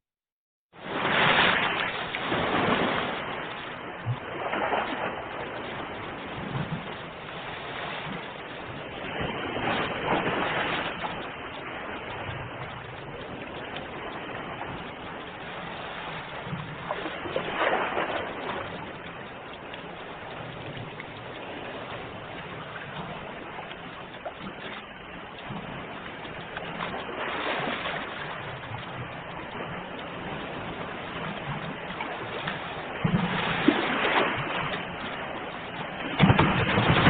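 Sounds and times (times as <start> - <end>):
sea waves washing onto shore: 0.8 - 37.0.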